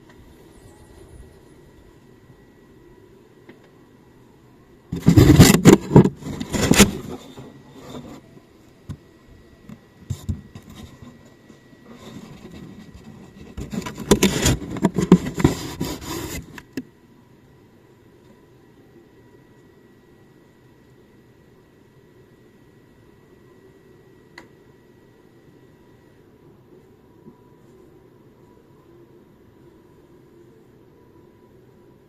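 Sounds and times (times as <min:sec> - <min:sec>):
cardboard box scraping and rubbing: 0:04.9 - 0:08.2, 0:11.8 - 0:16.6.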